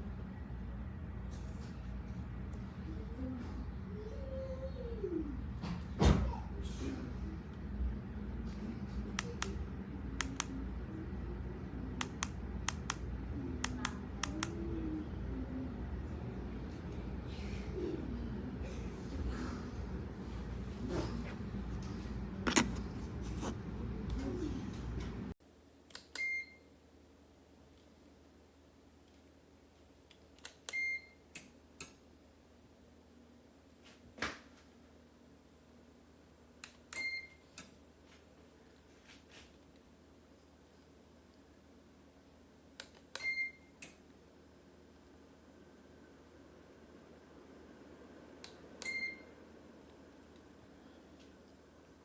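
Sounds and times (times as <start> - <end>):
steady low hum: 0.0 - 25.4
faint steady hum: 0.0 - 52.0.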